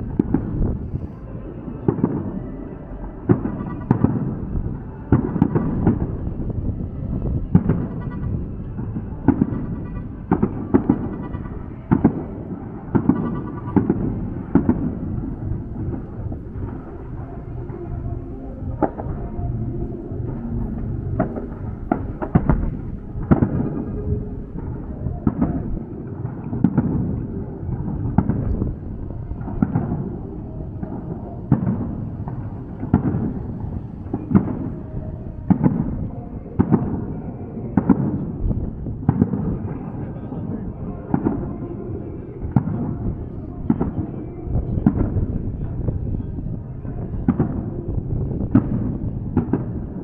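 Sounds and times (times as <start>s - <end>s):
fireworks bangs: 0.0s - 50.0s
fireworks rumble and crackle: 0.0s - 50.0s.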